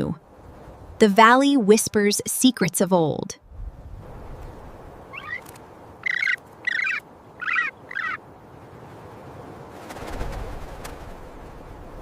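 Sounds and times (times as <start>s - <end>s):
harsh bird calls: 5.1s - 8.2s.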